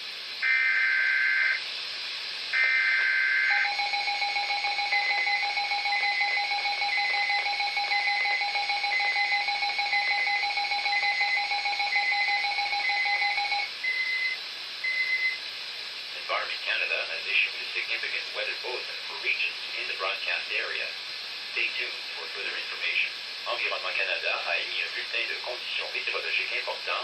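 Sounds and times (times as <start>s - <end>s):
steady attention tone: 2.5s - 15.4s.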